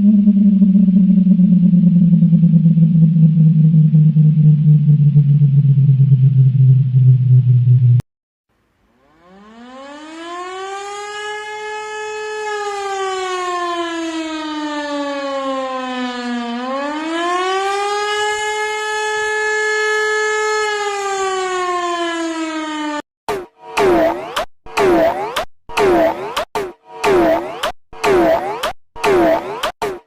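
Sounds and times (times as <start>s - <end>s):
civil defence siren wailing: 9.0s - 23.0s
sound effect blips: 23.3s - 30.0s.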